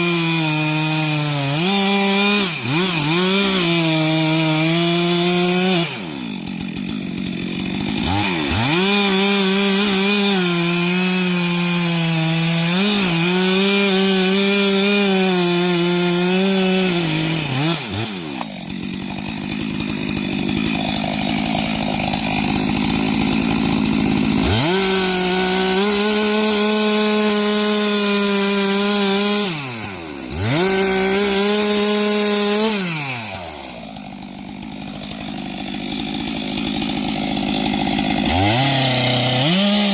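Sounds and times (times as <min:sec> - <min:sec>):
chainsaw cutting a tree: 0:00.0 - 0:39.9.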